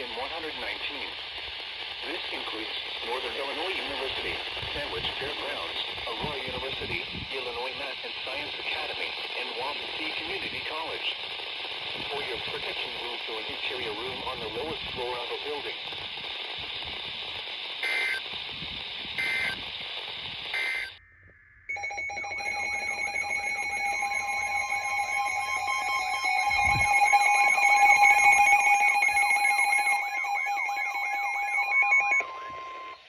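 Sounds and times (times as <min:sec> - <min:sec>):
electronic data bursts: 0:00.0 - 0:33.0
radio static: 0:00.0 - 0:33.0
electronic alert tone warbling: 0:20.6 - 0:33.0.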